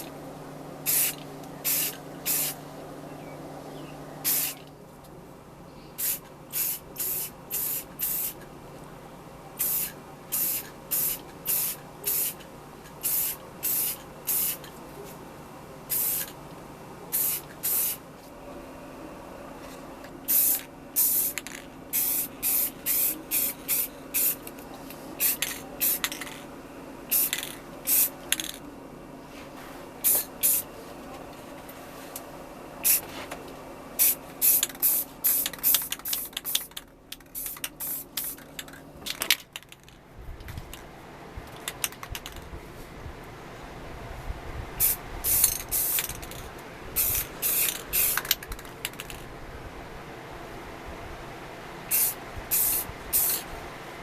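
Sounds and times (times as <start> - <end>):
steady low hum: 0.0 - 54.0
aerosol spray can hissing: 0.9 - 2.6, 4.2 - 4.6, 6.0 - 8.4, 9.6 - 12.4, 13.0 - 14.7, 17.2 - 18.0, 20.3 - 21.4, 27.1 - 28.1, 34.0 - 36.7, 44.8 - 46.1, 47.0 - 48.3, 51.9 - 53.4.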